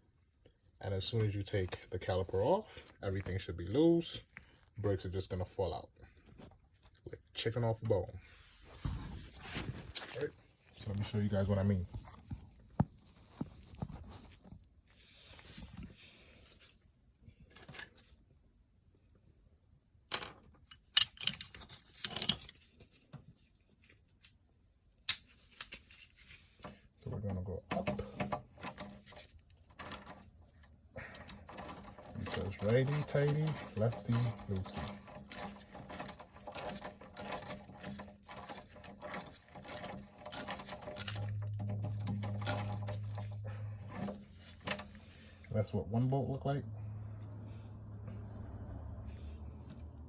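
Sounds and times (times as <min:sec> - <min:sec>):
metal tools clinking and rattling: 0:20.1 - 0:22.7, 0:27.7 - 0:45.5
steady low hum: 0:40.1 - 0:50.0.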